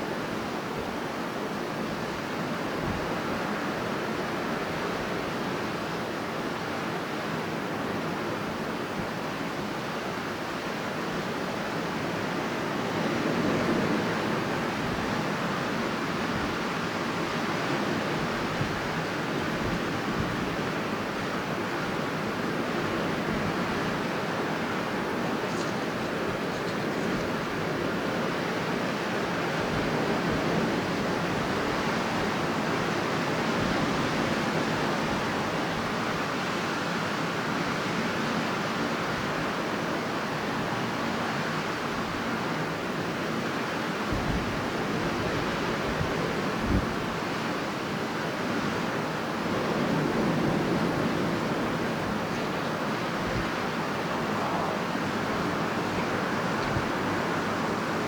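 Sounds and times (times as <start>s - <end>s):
strong wind blowing: 12.0s - 58.0s
strong wind rushing: 49.3s - 58.0s.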